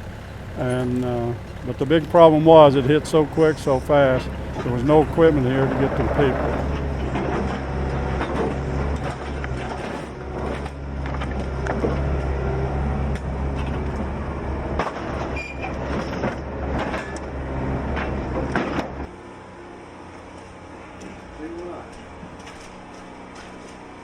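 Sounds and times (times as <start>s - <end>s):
large engine running: 0.0s - 24.0s
knocks and clatters: 0.1s - 19.1s.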